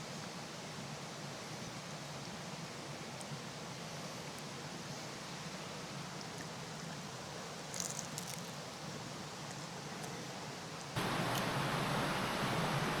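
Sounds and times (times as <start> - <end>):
creek flowing: 11.0 - 13.0.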